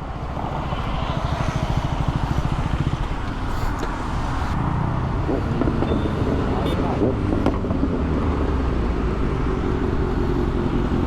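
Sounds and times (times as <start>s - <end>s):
road traffic: 0.0s - 11.0s.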